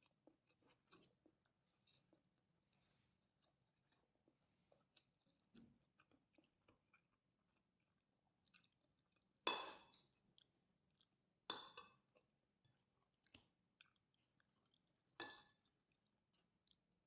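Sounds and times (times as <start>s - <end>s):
soft chewing clicks: 3.4s - 17.0s.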